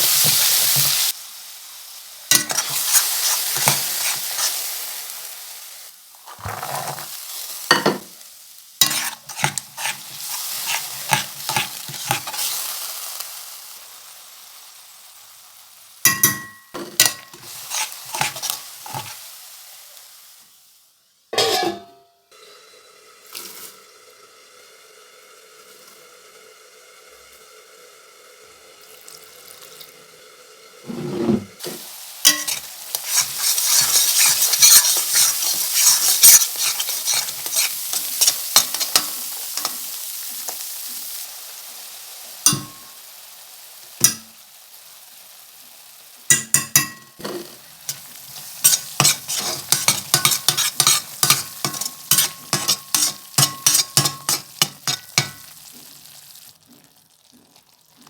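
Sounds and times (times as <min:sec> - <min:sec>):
spoon scraping pan: 0:00.0 - 0:01.1, 0:02.3 - 0:04.8, 0:06.2 - 0:08.1, 0:08.8 - 0:12.7, 0:16.1 - 0:19.3, 0:21.4 - 0:22.0, 0:30.9 - 0:40.7, 0:42.5 - 0:42.9, 0:44.0 - 0:44.3, 0:46.3 - 0:55.8
food sizzling in hot oil: 0:00.0 - 0:58.0
utensil clattering against pan: 0:21.4 - 0:21.9, 0:48.6 - 0:55.4.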